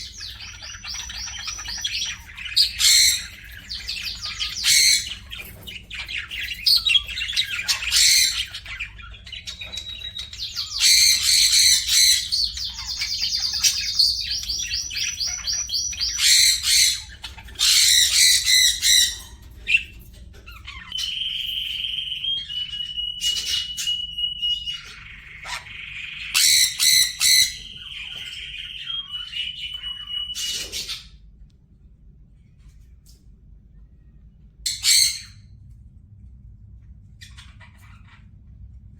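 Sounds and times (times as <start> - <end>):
whistled bird notes: 0.0 - 19.9, 20.7 - 31.1
birds squawking: 0.0 - 31.2
birds chirping and trilling: 0.0 - 31.4, 33.7 - 35.6, 37.0 - 38.7.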